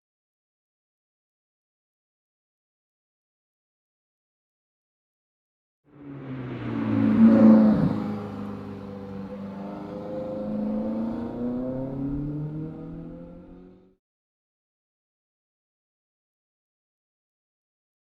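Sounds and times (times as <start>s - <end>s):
car engine accelerating: 5.9s - 14.0s.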